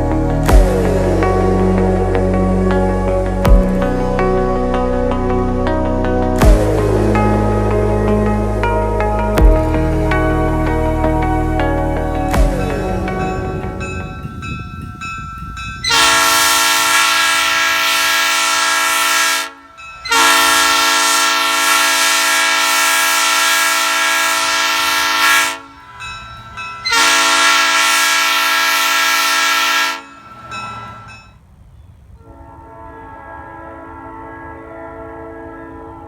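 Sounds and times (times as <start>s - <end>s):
train horn chord blasts: 15.7s - 31.3s, 32.2s - 36.0s.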